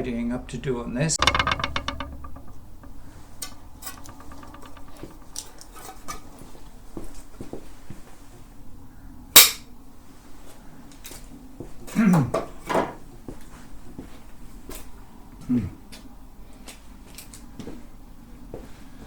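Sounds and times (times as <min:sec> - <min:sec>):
sharp metallic clack: 0:01.2 - 0:06.3.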